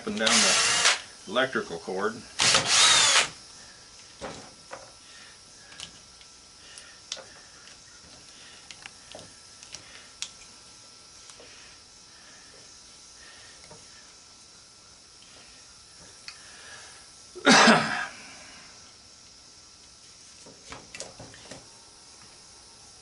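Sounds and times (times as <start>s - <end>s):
faint steady hiss: 0.0s - 23.0s
light clicks and taps of parts: 5.7s - 10.6s.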